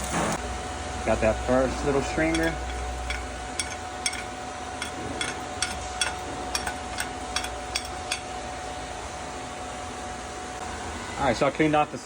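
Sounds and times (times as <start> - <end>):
steady background hum: 0.0 - 12.0
hammer tapping metal: 2.2 - 8.4.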